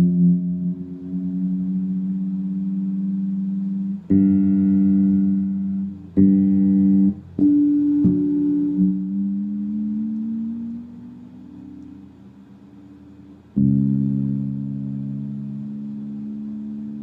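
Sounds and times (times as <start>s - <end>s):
fretless bass notes: 0.0s - 17.0s.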